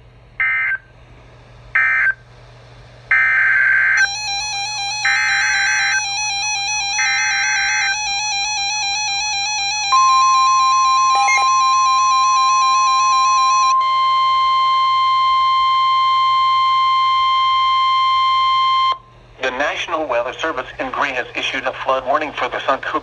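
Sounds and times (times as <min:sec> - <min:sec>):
steady high-pitched alert tone: 0:04.0 - 0:15.0.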